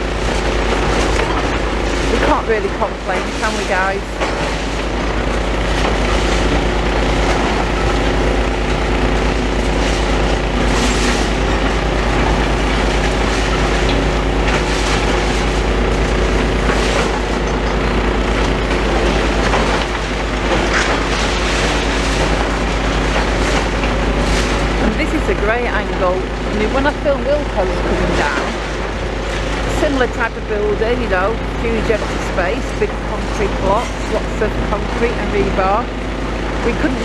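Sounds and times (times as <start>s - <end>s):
excavator diesel engine running: 0.0s - 37.0s.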